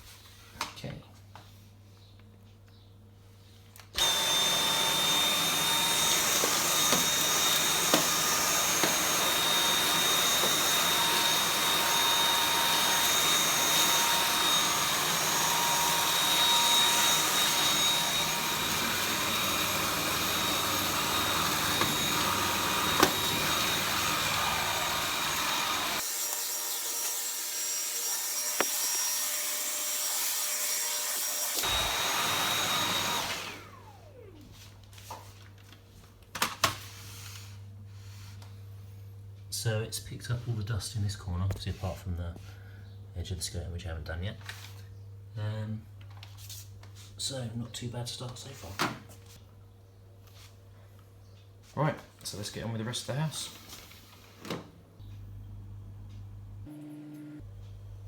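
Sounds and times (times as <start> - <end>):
stick vacuum high whine: 4.0 - 26.4, 31.4 - 34.5.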